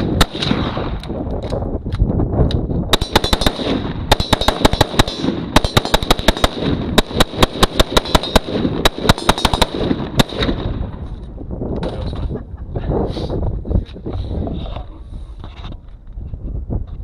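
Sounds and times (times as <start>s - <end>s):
rapid gunfire: 0.0s - 1.0s, 2.9s - 10.9s.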